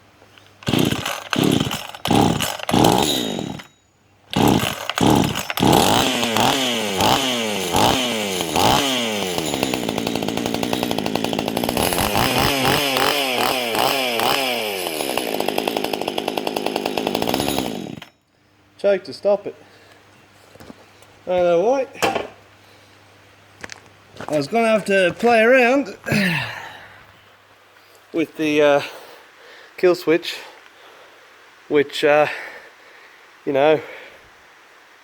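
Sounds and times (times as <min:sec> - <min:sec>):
chainsaw revving: 0:00.6 - 0:03.7, 0:04.3 - 0:18.1.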